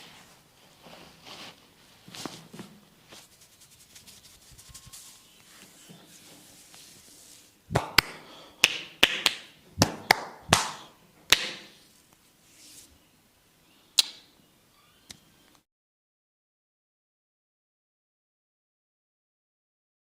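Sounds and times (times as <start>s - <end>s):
hands slapping on bare skin: 7.7s - 11.8s.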